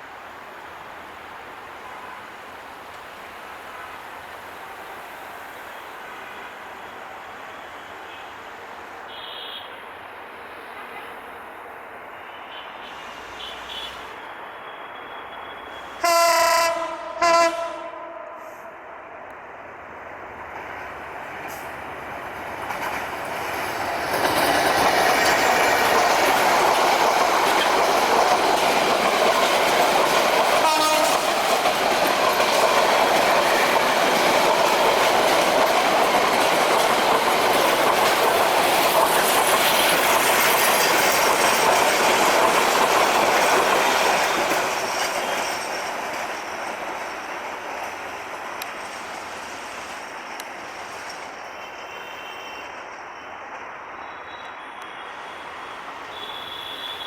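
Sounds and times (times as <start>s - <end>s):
train rumbling past: 9.7s - 57.0s
locomotive horn blasts: 16.0s - 18.7s, 30.6s - 31.3s, 54.7s - 57.0s.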